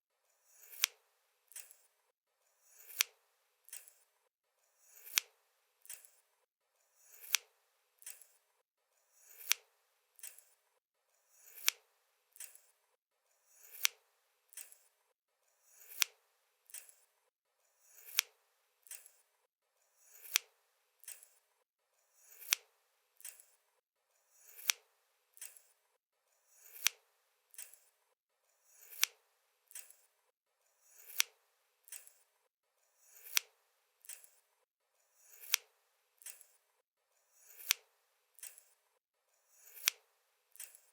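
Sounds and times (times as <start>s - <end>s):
scissors snipping: 0.6s - 1.9s, 2.8s - 4.1s, 5.0s - 6.2s, 7.1s - 8.4s, 9.3s - 10.6s, 11.4s - 11.8s, 12.4s - 12.7s, 13.6s - 14.9s, 15.8s - 17.0s, 18.0s - 19.2s, 20.1s - 21.4s, 22.3s - 23.6s, 24.5s - 24.8s, 25.4s - 25.7s, 26.6s - 27.9s, 28.8s - 30.1s, 31.0s - 32.2s, 33.2s - 34.4s, 35.3s - 36.6s, 37.5s - 38.8s, 39.6s - 40.9s.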